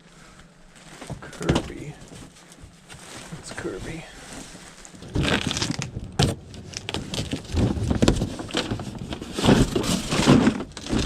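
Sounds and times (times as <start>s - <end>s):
objects knocking and clattering: 5.0s - 11.0s.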